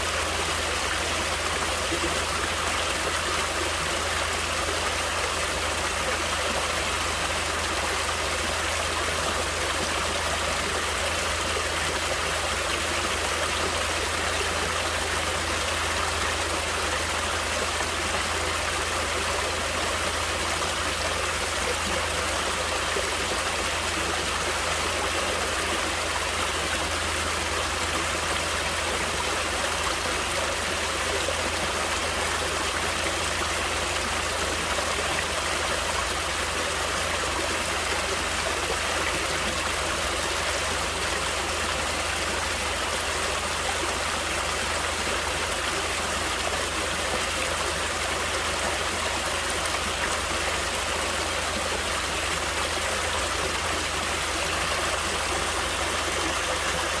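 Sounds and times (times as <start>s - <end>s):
stream water flowing over rocks: 0.0s - 57.0s.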